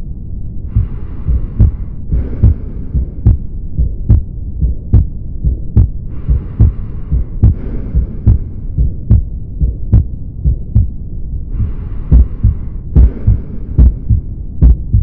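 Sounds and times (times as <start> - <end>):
heartbeat through stethoscope: 0.7 - 15.0.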